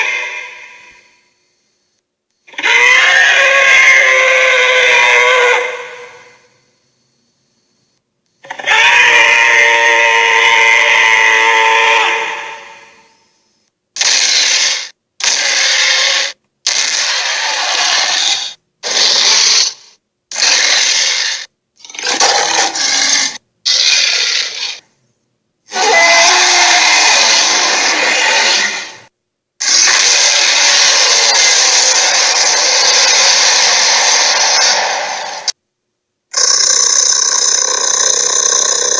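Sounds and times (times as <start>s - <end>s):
dinosaur roars and growls: 14.4s - 19.6s, 25.7s - 35.6s.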